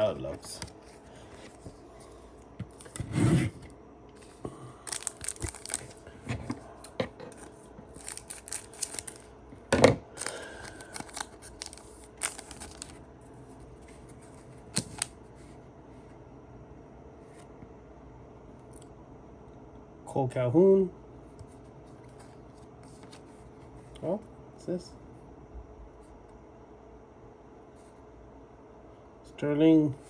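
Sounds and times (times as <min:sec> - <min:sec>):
cards sliding: 0:04.2 - 0:09.3, 0:10.2 - 0:13.0, 0:14.7 - 0:15.2
foil wrapper rustling and tearing: 0:04.2 - 0:09.3, 0:10.1 - 0:13.0, 0:14.7 - 0:15.2.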